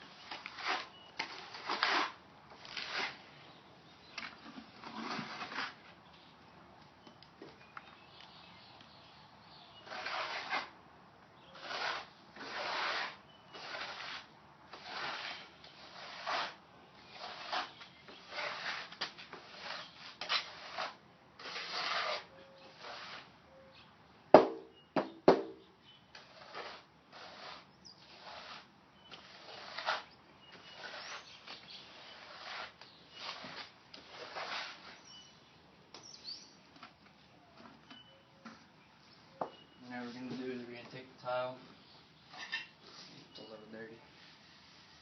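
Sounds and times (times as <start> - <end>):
trowel scraping grout: 0.2 - 3.3, 4.2 - 5.9, 9.8 - 10.8, 11.4 - 23.4, 26.1 - 35.3.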